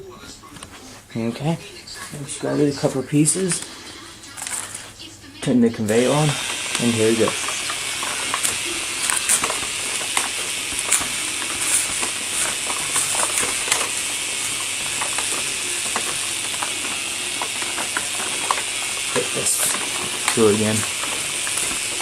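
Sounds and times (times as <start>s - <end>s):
toy paper shredder whirring: 2.2s - 22.0s
plastic gears clicking: 6.0s - 22.0s.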